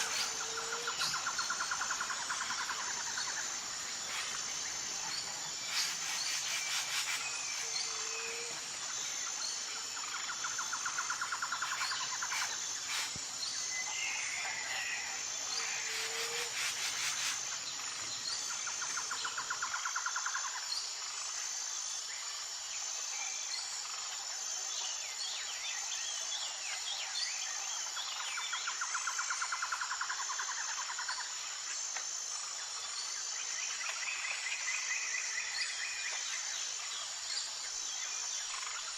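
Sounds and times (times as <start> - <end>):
high-pitched insect chorus: 0.0 - 38.9.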